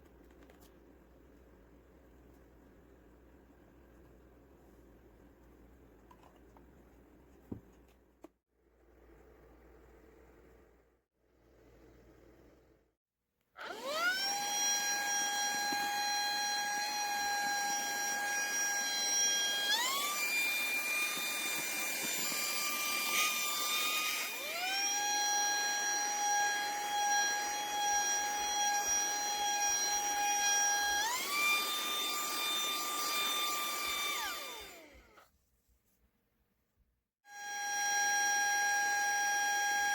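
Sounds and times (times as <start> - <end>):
handheld vacuum motor whine: 13.6 - 35.3, 37.3 - 39.9.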